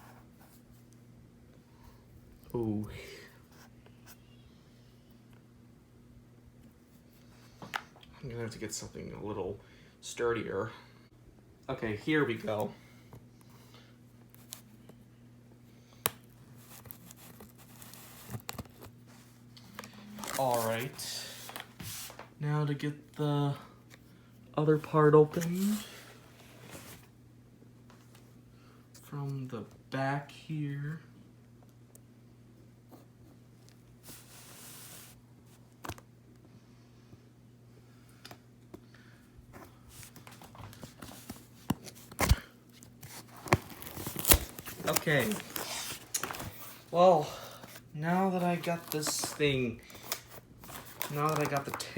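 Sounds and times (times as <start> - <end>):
cardboard package cut open: 41.7 - 46.6.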